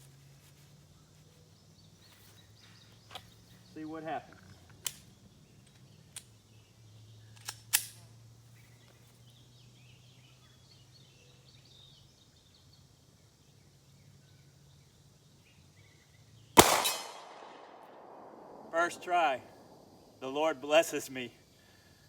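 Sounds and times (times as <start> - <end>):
low hum: 16.6 - 20.2.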